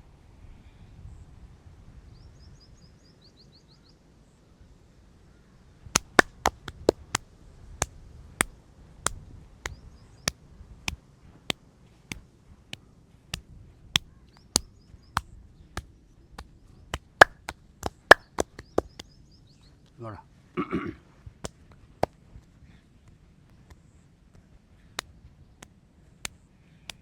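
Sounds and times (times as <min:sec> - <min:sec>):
hands slapping in massage: 0:06.0 - 0:07.2, 0:10.9 - 0:19.1.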